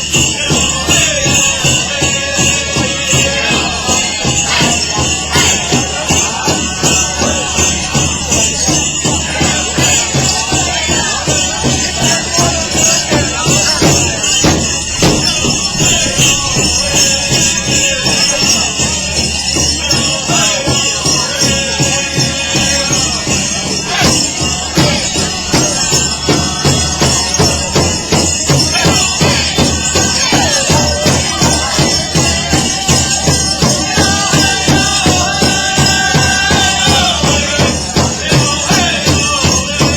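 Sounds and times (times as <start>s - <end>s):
bells jingling: 0.0s - 39.9s
large drum beating: 0.0s - 39.9s
singers chanting: 0.0s - 39.9s.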